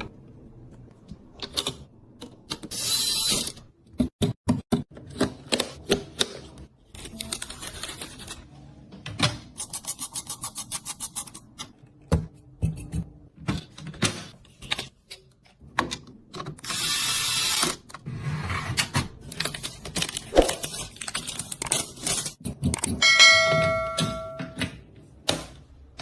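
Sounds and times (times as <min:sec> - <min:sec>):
computer parts clicking and rattling: 0:19.2 - 0:23.0
short ringing tone: 0:23.0 - 0:24.6.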